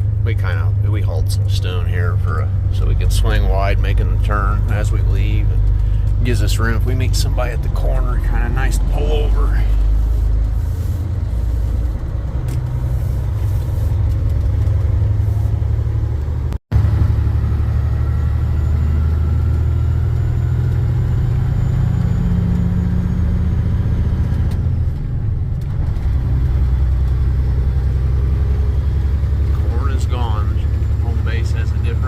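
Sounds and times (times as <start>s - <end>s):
truck engine droning: 0.0s - 32.0s.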